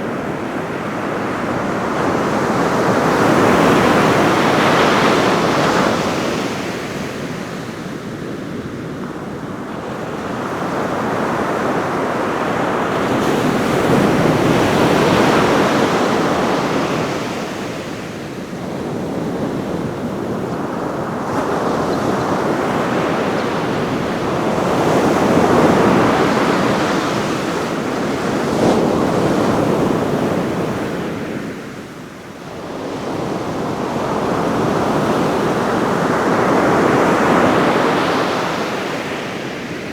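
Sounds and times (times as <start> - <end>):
ocean surf breaking: 19.1 - 30.7.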